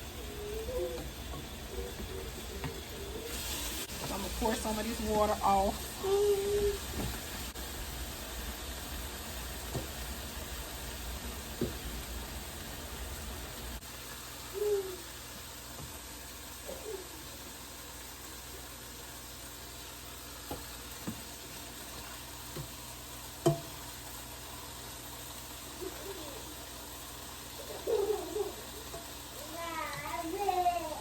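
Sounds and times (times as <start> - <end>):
fish sizzling in hot oil: 0.0 - 31.0
utensil knocking on pan: 23.4 - 23.8.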